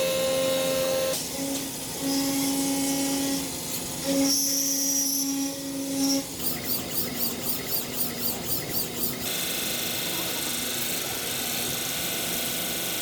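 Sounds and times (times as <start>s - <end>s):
machine tool motor whining: 2.0s - 9.8s
rhythmic mechanical pulsing: 2.0s - 13.0s.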